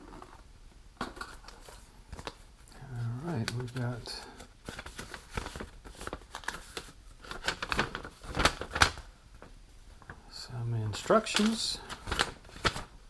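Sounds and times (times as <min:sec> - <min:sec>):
paper and cardboard rustling: 0:01.0 - 0:09.1, 0:10.8 - 0:13.0.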